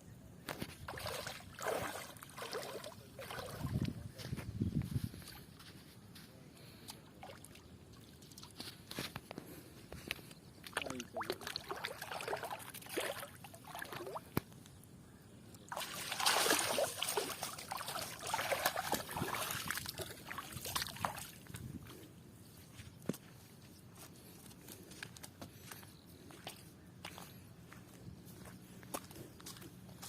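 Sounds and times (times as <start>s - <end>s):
water splashing and sloshing: 0.5s - 4.0s, 10.6s - 14.5s, 15.7s - 21.8s.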